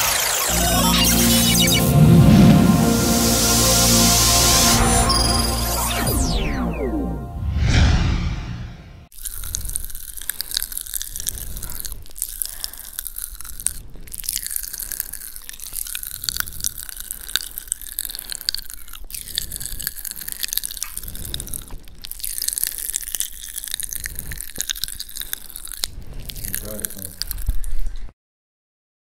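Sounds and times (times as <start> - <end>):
popping candy crackling and fizzing: 9.1 - 28.1.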